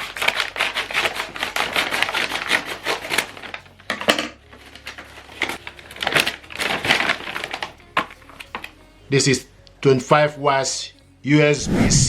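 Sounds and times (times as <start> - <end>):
packaging clicks and rustles: 0.0 - 8.8
packaging snapping: 0.0 - 8.8.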